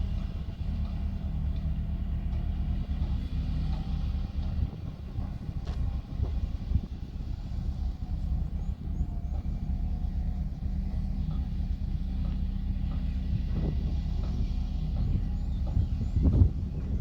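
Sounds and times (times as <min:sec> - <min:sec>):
heavy machinery diesel engine rumbling: 0:00.0 - 0:17.0.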